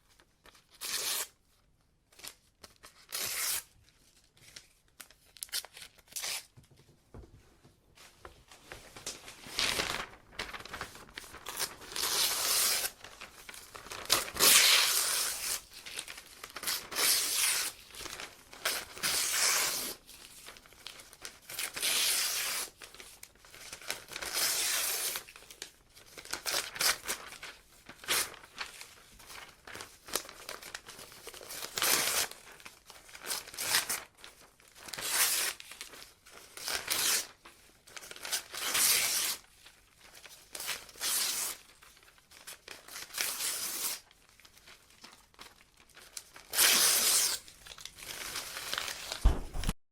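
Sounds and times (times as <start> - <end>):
paper ripping: 2.8 - 3.7, 9.0 - 20.6, 44.6 - 49.8
paper crinkling: 8.0 - 19.0, 25.1 - 38.6, 44.0 - 49.8.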